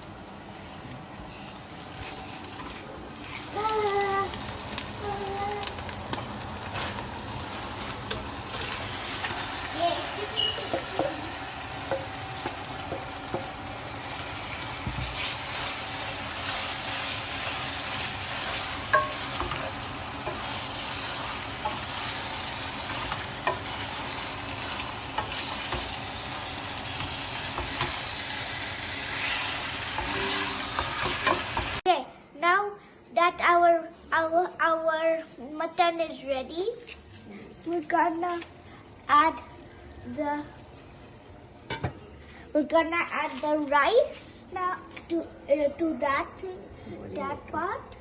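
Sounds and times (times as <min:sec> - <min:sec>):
meat and onions sizzling: 0:01.6 - 0:31.8.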